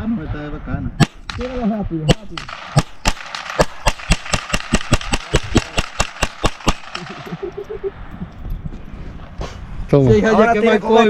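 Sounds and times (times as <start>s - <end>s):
rapid gunshots: 1.0s - 7.3s.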